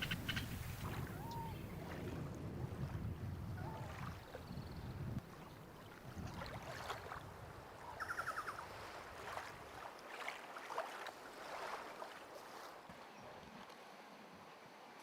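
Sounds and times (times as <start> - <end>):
rapid ticks: 0.0 - 0.6.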